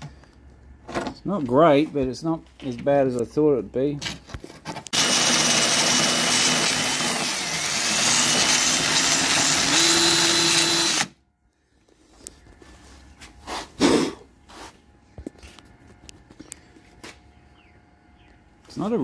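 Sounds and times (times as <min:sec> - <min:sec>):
electric drill grinding metal: 0:04.9 - 0:11.2.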